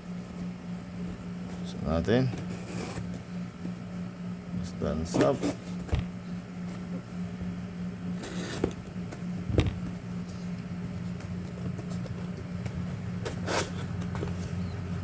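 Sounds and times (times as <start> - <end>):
steady low hum: 0.0 - 15.0
knock on cardboard box: 9.5 - 9.9.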